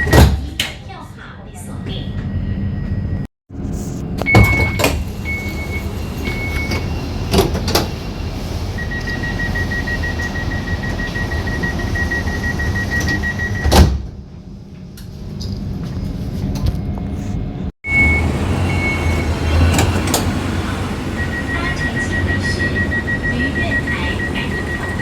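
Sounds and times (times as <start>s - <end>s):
long steady warning tone: 4.3s - 7.3s, 8.0s - 13.7s, 17.8s - 25.0s
doors shutting thud: 13.1s - 14.1s.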